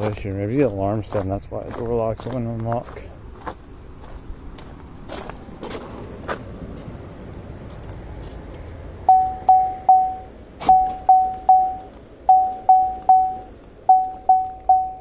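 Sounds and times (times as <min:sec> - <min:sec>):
electronic warning chime dings: 0:09.1 - 0:15.0.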